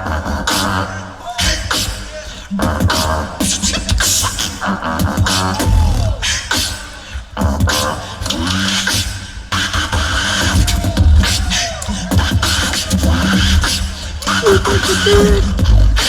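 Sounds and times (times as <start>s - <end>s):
beatboxing beat: 0.0s - 16.0s
sung vocal tones: 11.5s - 16.0s.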